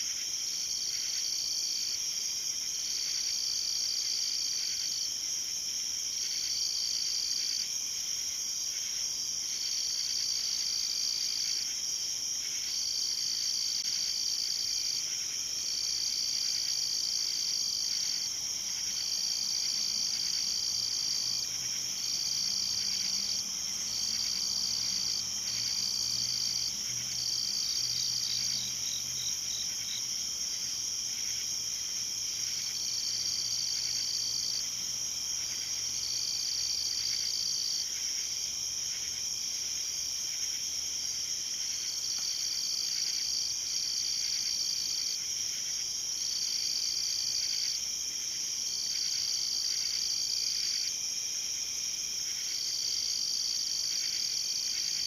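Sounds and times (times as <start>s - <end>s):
crickets droning: 0.0s - 55.0s
cricket trilling: 12.5s - 48.0s.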